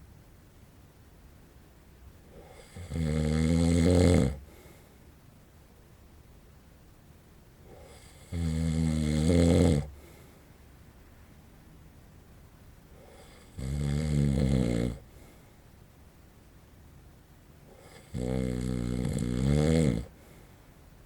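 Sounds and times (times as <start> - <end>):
man snoring: 2.4 - 4.4, 7.8 - 10.0, 13.1 - 15.0, 17.8 - 20.1.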